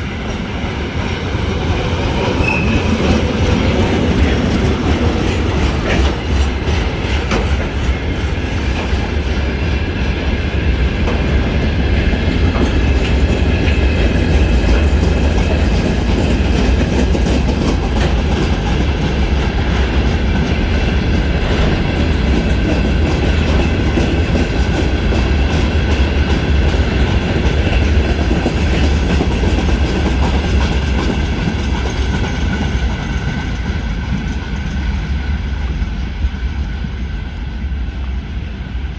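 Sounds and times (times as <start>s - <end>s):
freight train rumbling past: 0.0s - 38.9s
wheels clattering over rail joints: 0.3s - 9.6s.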